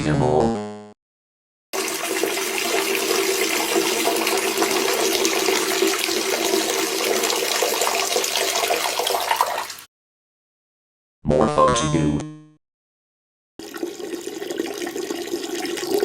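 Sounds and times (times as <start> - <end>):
liquid stream splashing into toilet: 1.8 - 9.9, 13.6 - 16.0.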